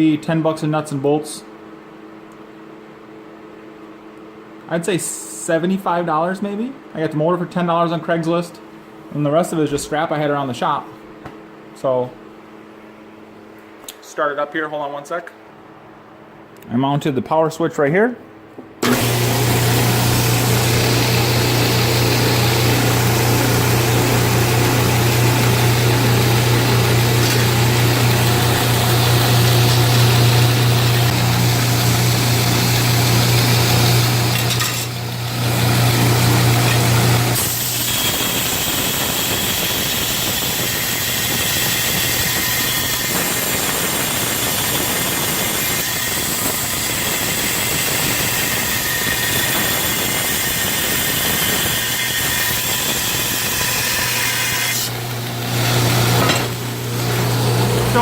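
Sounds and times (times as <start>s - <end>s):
belt grinder running: 18.8s - 58.0s.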